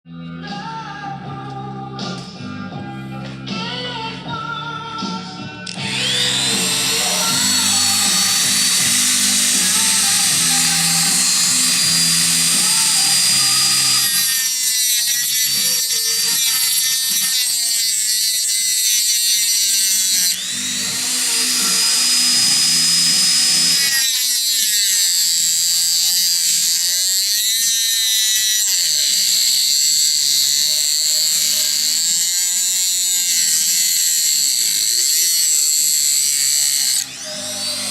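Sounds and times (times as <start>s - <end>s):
background music: 0.1s - 24.0s
power tool whine: 5.6s - 37.9s.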